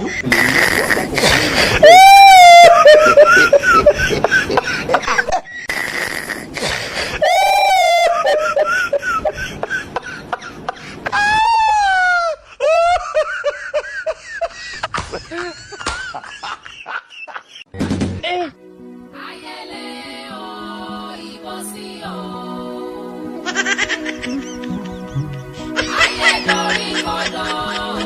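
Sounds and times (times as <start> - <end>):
high-pitched wailing and laughing cries: 1.7 - 5.5, 7.2 - 9.4, 11.1 - 13.6, 23.4 - 28.0.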